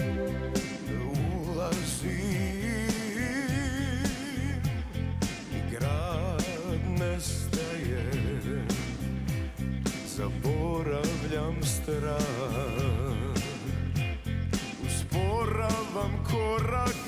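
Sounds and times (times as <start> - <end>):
wavering melody with vibrato: 0.0 - 1.7
live band playing slow ballad: 0.0 - 17.0.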